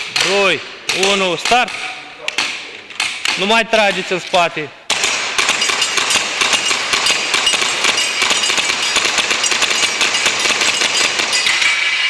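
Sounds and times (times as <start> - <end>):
airsoft pistols firing: 4.9 - 11.6
pellets pinging off steel targets: 4.9 - 12.0.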